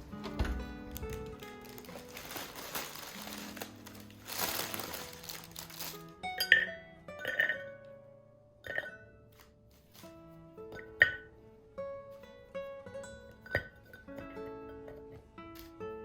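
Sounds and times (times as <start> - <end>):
soft background music: 0.0 - 16.0
glass clinks: 6.3 - 7.7, 8.6 - 9.0.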